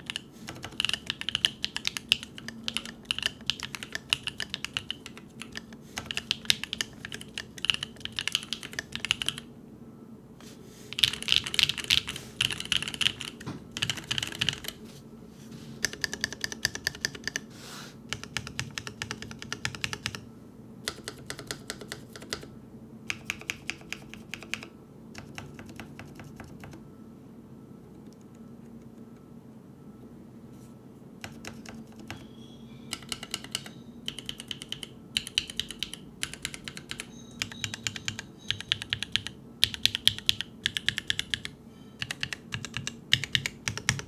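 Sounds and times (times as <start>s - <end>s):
mechanical keyboard typing clicks: 0.0s - 9.4s, 11.0s - 14.8s, 15.8s - 17.4s, 18.1s - 20.3s, 20.9s - 22.5s, 23.1s - 26.8s, 31.2s - 32.3s, 32.9s - 44.0s.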